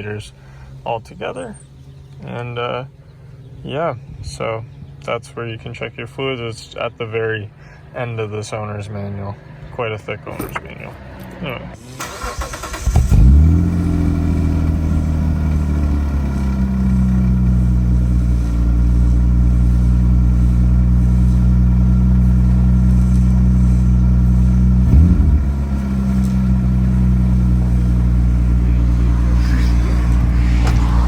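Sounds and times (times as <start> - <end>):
car engine idling: 7.5 - 31.0.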